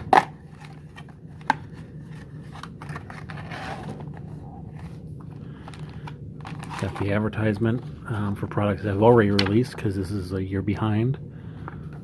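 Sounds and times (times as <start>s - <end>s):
cardboard and paper rustling: 0.0s - 8.0s.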